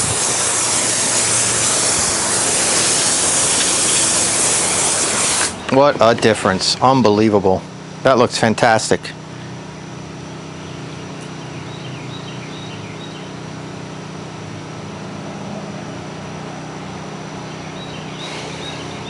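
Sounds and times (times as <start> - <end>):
water spraying hiss: 0.0 - 5.6, 18.2 - 19.0
pressure washer engine running: 0.0 - 19.0
faint bird chirps: 17.5 - 19.0.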